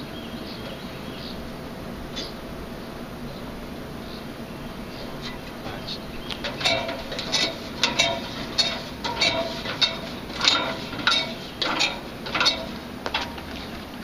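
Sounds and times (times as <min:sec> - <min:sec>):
metallic clanks and taps: 0:06.3 - 0:13.4.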